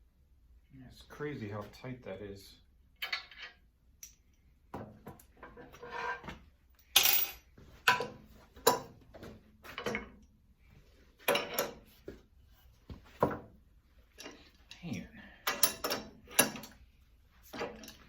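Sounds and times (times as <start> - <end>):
metal tools clanking on steel: 5.1 - 9.0, 9.7 - 10.2, 11.2 - 11.9, 14.1 - 16.8, 17.5 - 18.0.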